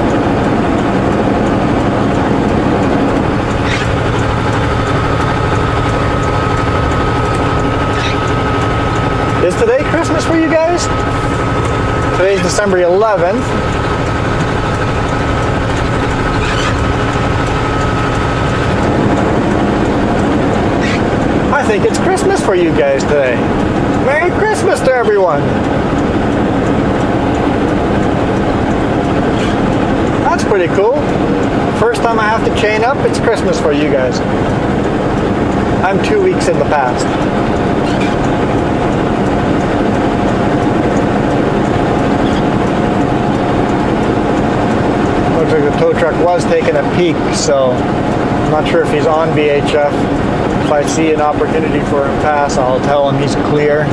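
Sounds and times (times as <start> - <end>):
thin high whine: 0.0 - 30.9
truck engine and road rumble: 0.0 - 53.9.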